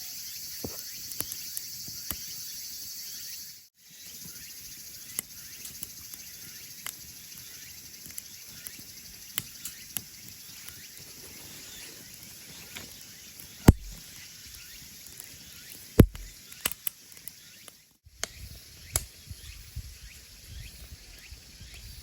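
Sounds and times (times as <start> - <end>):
wood fire crackling: 5.1 - 17.4.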